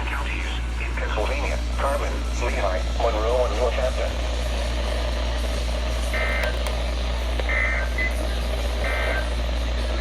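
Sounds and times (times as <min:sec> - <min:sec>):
radio receiver hum and hiss: 0:00.0 - 0:10.0
digital buzzing bursts: 0:03.0 - 0:10.0.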